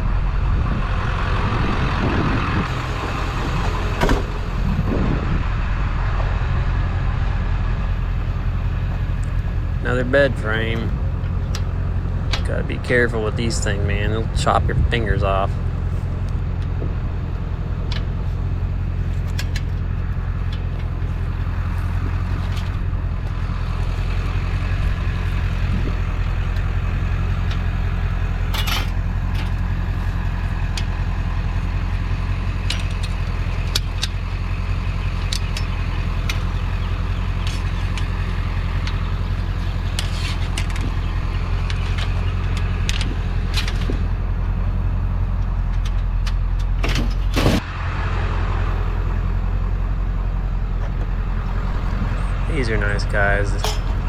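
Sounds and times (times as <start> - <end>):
vehicle engine idling: 0.0 - 54.0
metallic clanks and clicks: 28.5 - 29.6, 32.6 - 34.2, 35.0 - 44.1, 45.4 - 47.6, 53.6 - 54.0.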